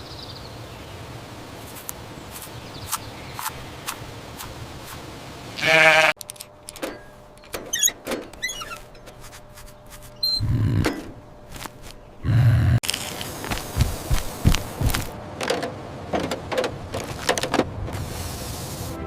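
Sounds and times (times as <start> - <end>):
steady background hum: 0.0 - 18.0
sheep bleating: 5.6 - 6.2.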